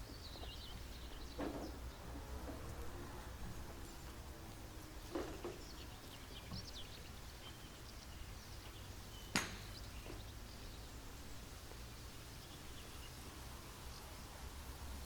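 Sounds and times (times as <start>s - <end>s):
faint high bird chirps: 5.5s - 10.9s.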